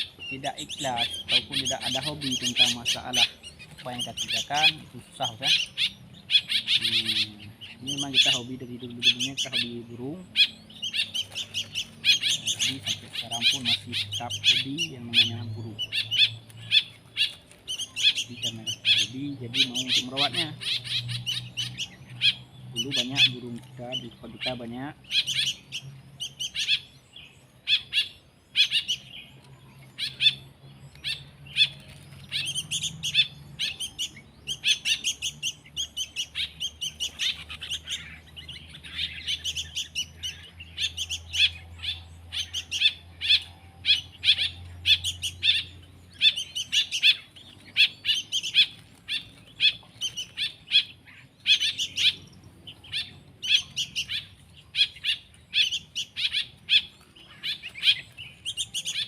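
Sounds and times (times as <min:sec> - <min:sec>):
songbird chicks chirping: 0:00.0 - 0:59.0.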